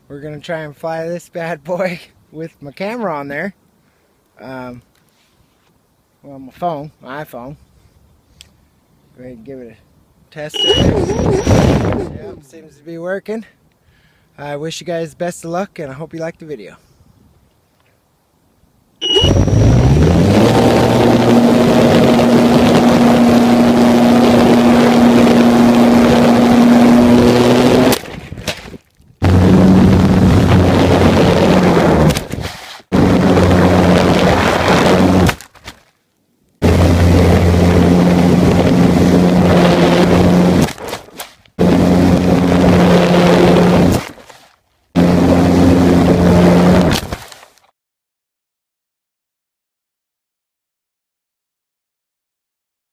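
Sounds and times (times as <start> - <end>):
model airplane motor and propeller: 10.6 - 12.4, 19.0 - 28.0, 36.6 - 40.7, 41.6 - 44.3, 45.0 - 47.6
wind rush: 10.9 - 12.5, 20.1 - 35.2.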